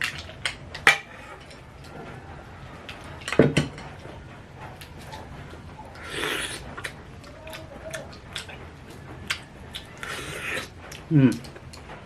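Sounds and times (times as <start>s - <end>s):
utensils clinking against a dish: 0.0s - 2.0s, 2.9s - 8.6s.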